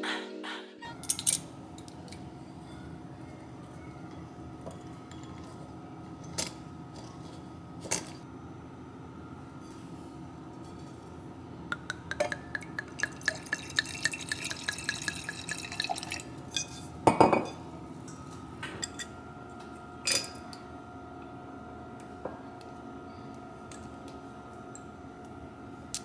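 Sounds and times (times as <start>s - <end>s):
metal utensil clinking on a dish: 0.9s - 2.8s, 4.1s - 5.6s.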